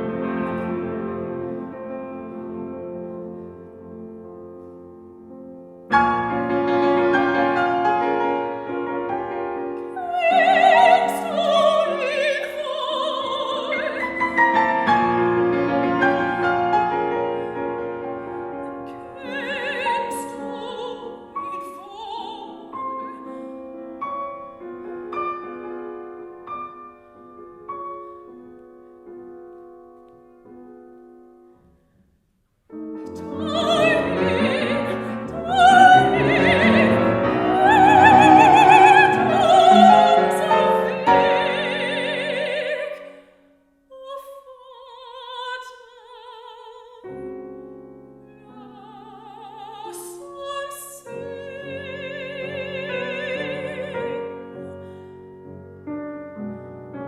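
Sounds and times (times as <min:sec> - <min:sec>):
piano accompaniment: 0:00.0 - 0:31.9, 0:32.7 - 0:43.2, 0:47.0 - 0:57.0
soprano singing: 0:06.3 - 0:24.8, 0:32.8 - 0:55.6.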